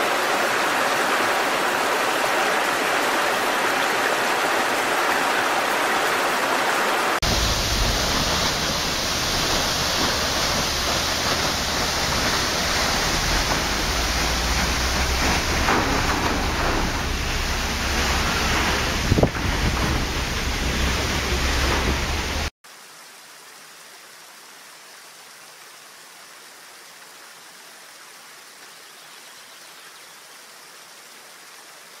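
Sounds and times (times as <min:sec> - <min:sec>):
waterfall rushing: 0:00.0 - 0:22.6.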